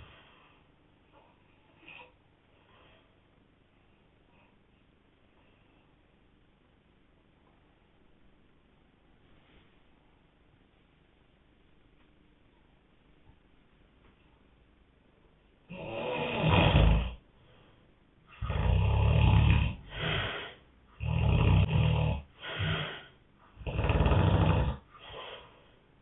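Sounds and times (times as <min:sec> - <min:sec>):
man snoring: 0:15.7 - 0:17.2, 0:18.4 - 0:24.9.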